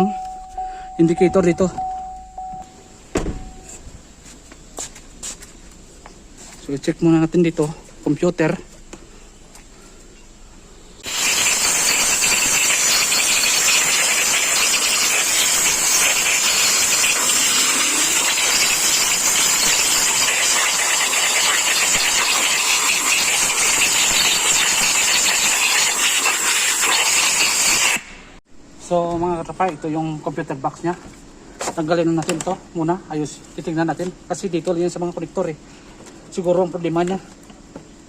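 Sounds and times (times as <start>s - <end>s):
loud steady hiss: 10.0s - 30.7s.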